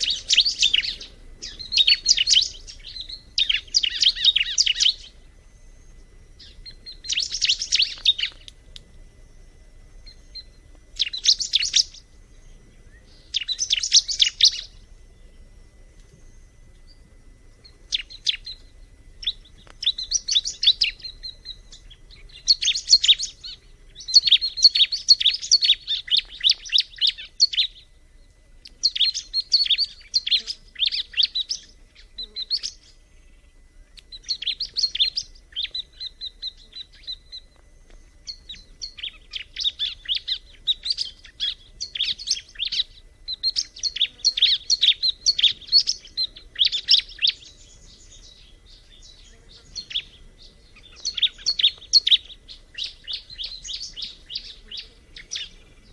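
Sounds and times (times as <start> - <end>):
bird chattering chirps: 0.0 - 5.1, 49.1 - 55.9.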